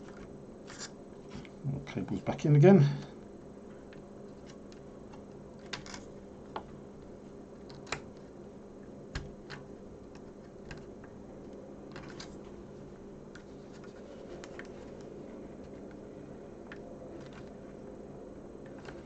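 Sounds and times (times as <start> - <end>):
steady low hum: 0.0 - 19.0
hands clicking and tapping on computer: 9.1 - 11.1.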